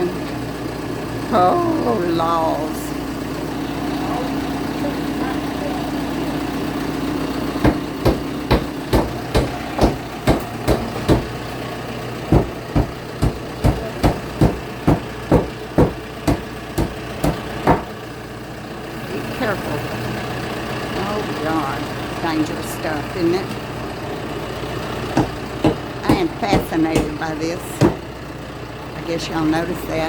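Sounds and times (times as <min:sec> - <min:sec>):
heavy engine idling: 0:00.0 - 0:30.0
sharp evenly spaced knocks: 0:07.5 - 0:11.5, 0:12.2 - 0:18.0, 0:24.9 - 0:28.2.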